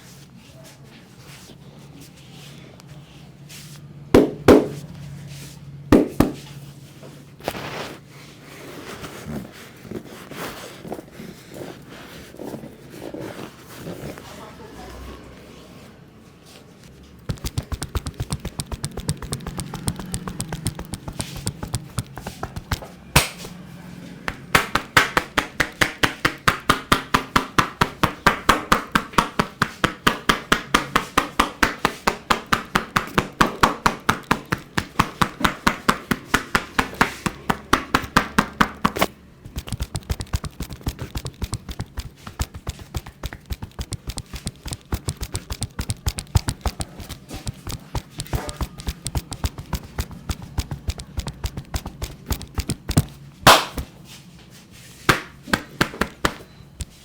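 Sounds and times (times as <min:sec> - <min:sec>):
hands slapping in massage strokes: 0:04.2 - 0:04.8, 0:06.0 - 0:06.5, 0:17.3 - 0:23.6, 0:24.3 - 0:54.0, 0:55.1 - 0:57.0.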